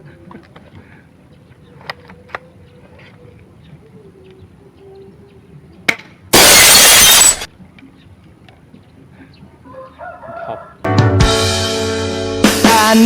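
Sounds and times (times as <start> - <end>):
plate shattering: 6.3 - 7.5.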